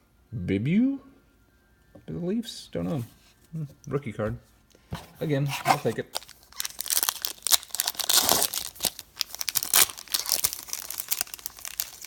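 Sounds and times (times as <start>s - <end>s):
foil wrapper crinkling and tearing: 5.7s - 12.0s.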